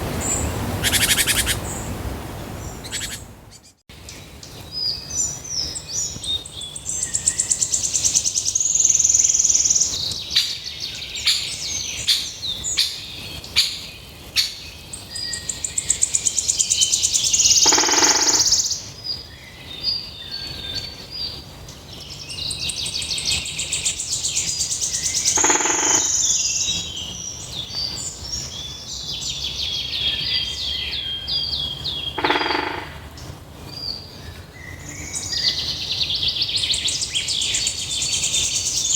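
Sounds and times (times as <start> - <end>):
songbird trilling and chirping: 0.2 - 1.9, 2.6 - 38.9.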